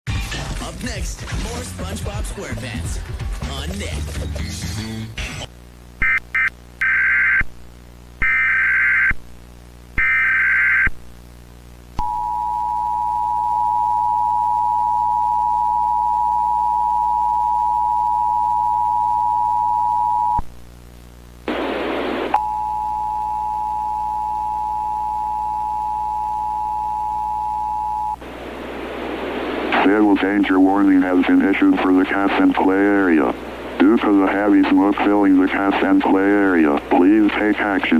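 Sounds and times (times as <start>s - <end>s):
burst of static: 20.9s - 22.4s, 28.2s - 37.9s.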